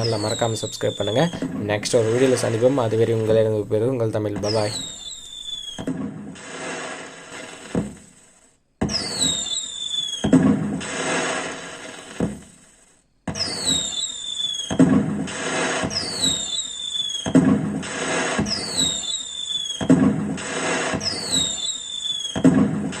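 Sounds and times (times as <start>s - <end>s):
firework whistle falling in pitch: 0.0s - 1.5s, 4.4s - 5.9s, 8.9s - 11.2s, 13.4s - 14.8s, 15.6s - 23.0s
firework crackling bursts: 0.0s - 3.6s, 4.4s - 23.0s
firework low boom: 4.4s - 12.7s, 13.3s - 23.0s.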